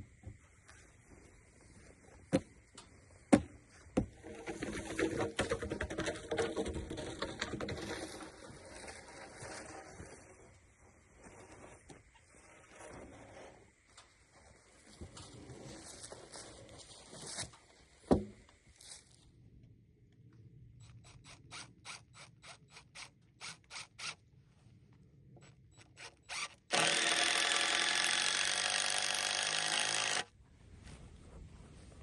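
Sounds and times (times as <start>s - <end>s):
cordless drill driving screw: 25.8s - 30.3s.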